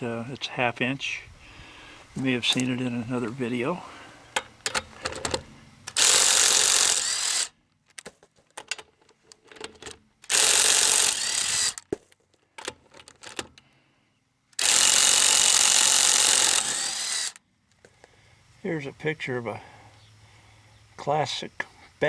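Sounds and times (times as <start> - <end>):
impact wrench hammering: 4.4 - 7.5, 10.3 - 12.0, 14.6 - 17.4.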